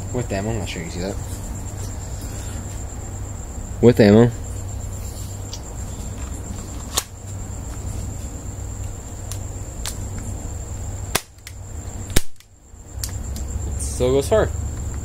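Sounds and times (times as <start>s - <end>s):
airsoft pistol pops: 11.1s - 13.2s.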